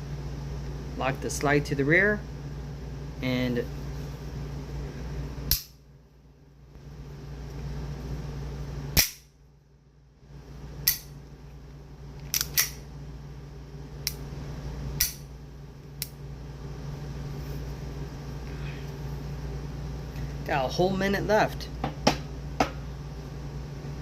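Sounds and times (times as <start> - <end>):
pistol action metallic snap: 5.5 - 5.8, 9.0 - 9.3, 10.8 - 11.1, 12.3 - 12.8, 15.0 - 15.3
pistol action clicks: 12.3 - 12.8.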